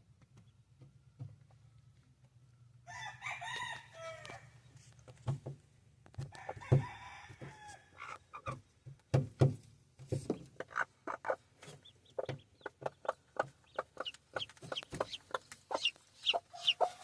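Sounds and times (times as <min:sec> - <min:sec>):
rooster crowing: 0:02.8 - 0:04.6, 0:06.3 - 0:07.9.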